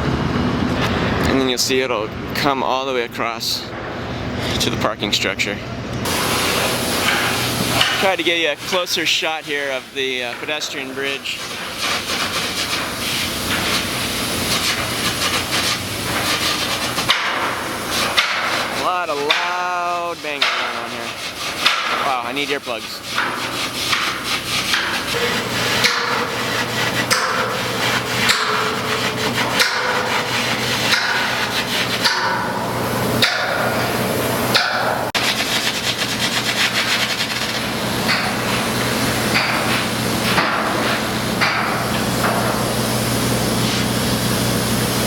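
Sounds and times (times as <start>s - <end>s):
steady hum: 0.0s - 45.0s
continuous rasping noise: 4.4s - 45.0s
steady hissing noise: 6.1s - 45.0s
hammering and clatter: 7.0s - 8.8s, 10.2s - 42.8s.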